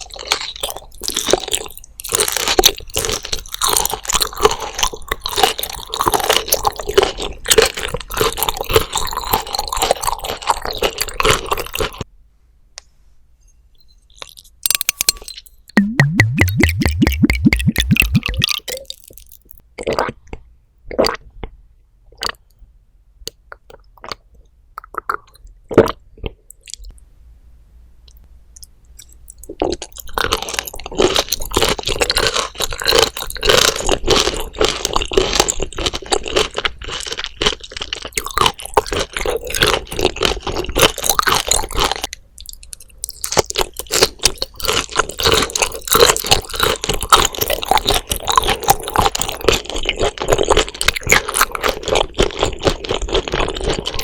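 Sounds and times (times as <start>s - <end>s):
crunchy chewing of fish bones: 0.0s - 12.1s, 29.0s - 54.0s
sharp clicks and taps: 14.7s - 18.8s.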